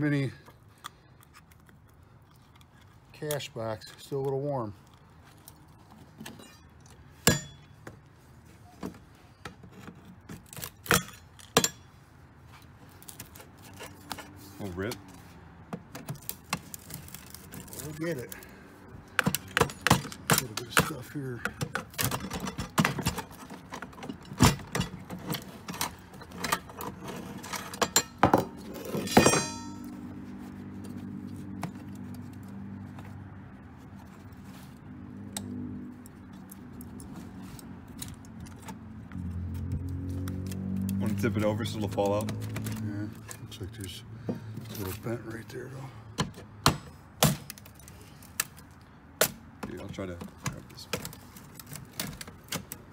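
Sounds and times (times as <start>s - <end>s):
metal clinking and rattling: 21.6s - 29.9s
metallic clanks of coin box: 27.6s - 29.8s
ringing metallic clink: 29.1s - 29.9s.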